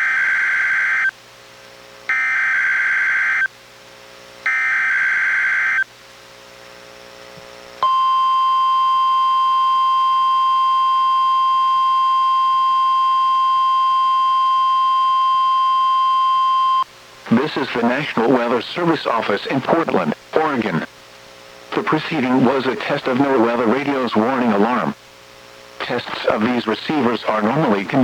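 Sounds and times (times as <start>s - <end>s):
steady warning alarm tone: 4.5s - 5.8s, 7.8s - 18.9s.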